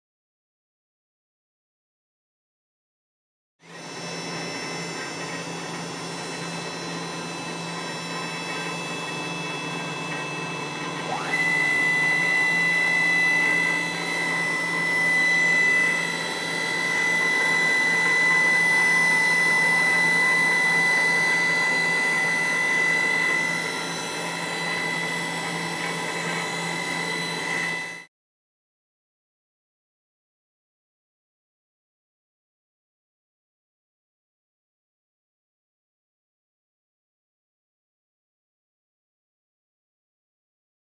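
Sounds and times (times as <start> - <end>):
high machine whine: 3.6 - 28.1
lathe machine humming: 3.7 - 28.1.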